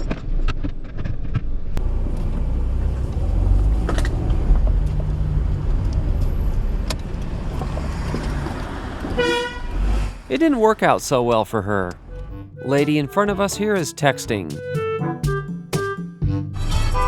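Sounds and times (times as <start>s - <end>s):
car engines and traffic rumble: 1.4s - 12.6s.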